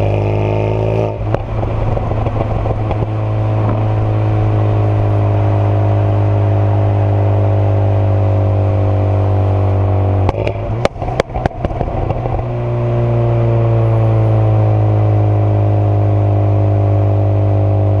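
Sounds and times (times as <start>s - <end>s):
car engine droning: 0.0s - 18.0s
exhaust pops and crackles: 1.1s - 4.0s, 10.2s - 12.6s.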